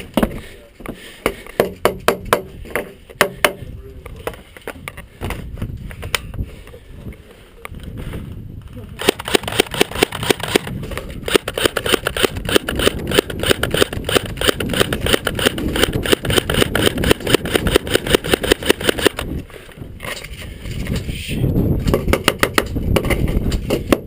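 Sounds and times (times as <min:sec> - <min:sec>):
rapid mechanical clicking: 0:11.3 - 0:19.2.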